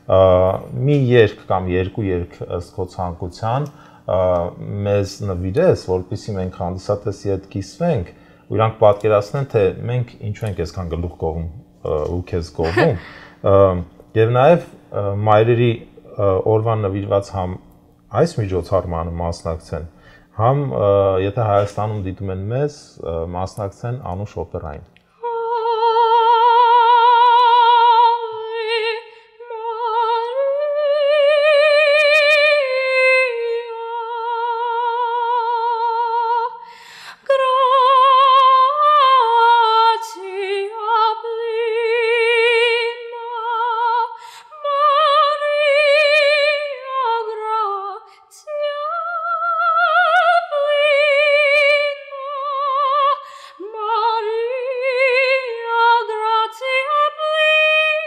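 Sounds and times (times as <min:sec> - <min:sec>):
girl singing with vibrato: 0:12.6 - 0:13.4, 0:25.2 - 0:58.0.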